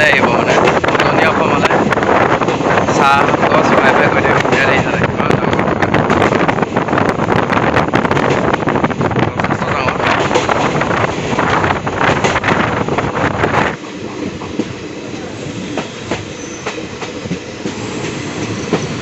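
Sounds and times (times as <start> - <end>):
train rumble: 0.0 - 19.0
train wheels clicking over rail joints: 10.0 - 14.8, 15.6 - 19.0.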